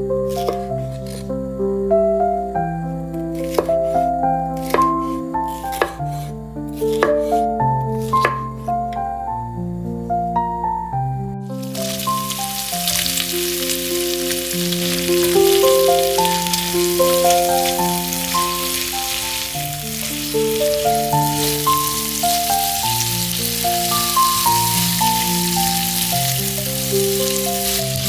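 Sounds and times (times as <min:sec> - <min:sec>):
melodic background music: 0:01.3 - 0:28.0
food sizzling in a hot pan: 0:11.4 - 0:28.0.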